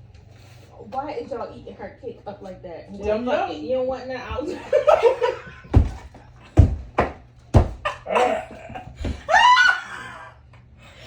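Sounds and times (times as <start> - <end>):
heavy thumps: 5.0 - 8.0, 8.7 - 9.3
people laughing and squealing: 7.8 - 10.4.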